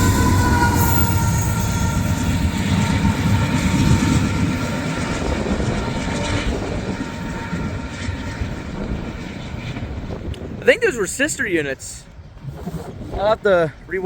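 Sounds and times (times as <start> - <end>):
high ringing from train wheels: 0.0 - 7.9
freight train rumbling: 0.0 - 14.0.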